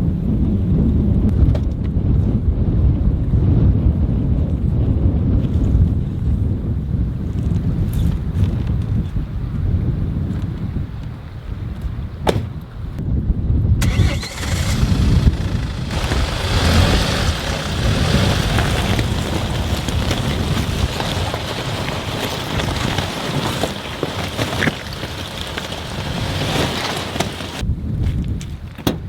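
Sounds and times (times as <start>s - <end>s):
low wind buffeting on microphone: 0.0s - 29.0s
loud rushing wind gust: 12.5s - 21.4s.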